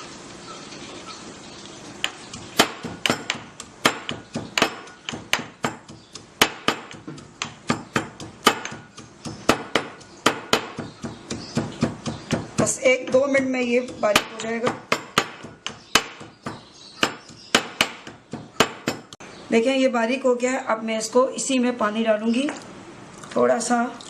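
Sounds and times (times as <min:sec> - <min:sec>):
mint leaves being pounded: 0:02.0 - 0:19.2.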